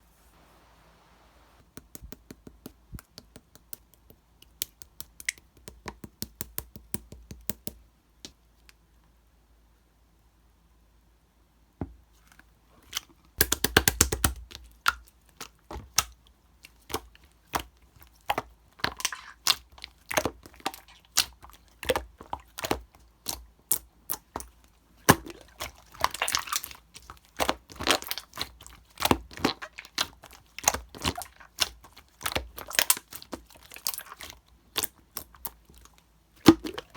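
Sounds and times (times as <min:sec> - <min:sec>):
slime clicking and crackling: 0:18.2 - 0:36.9.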